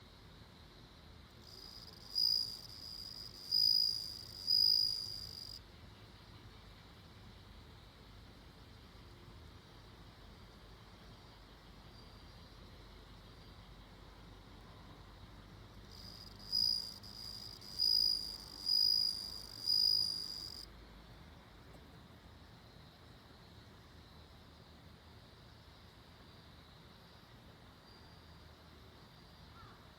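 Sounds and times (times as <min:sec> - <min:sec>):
cricket high ringing trill: 0:01.5 - 0:05.6, 0:15.8 - 0:20.7.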